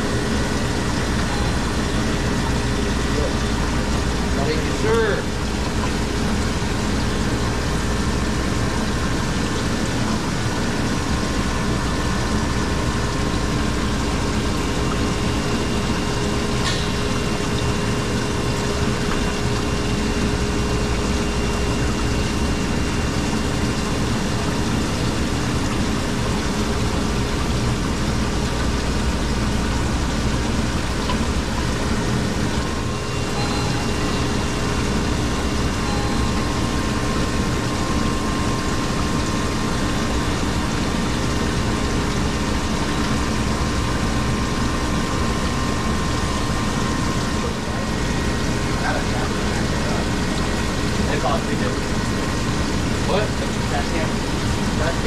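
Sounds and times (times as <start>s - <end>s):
ice machine humming: 0.0s - 55.0s.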